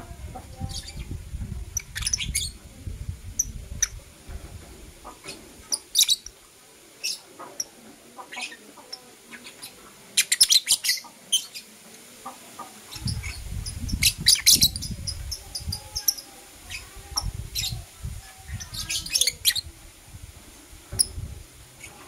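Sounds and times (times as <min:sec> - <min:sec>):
lovebirds chirping: 0:00.0 - 0:02.7, 0:05.0 - 0:06.4, 0:07.0 - 0:11.7, 0:12.8 - 0:19.7
low rumble with thumps: 0:00.0 - 0:05.1.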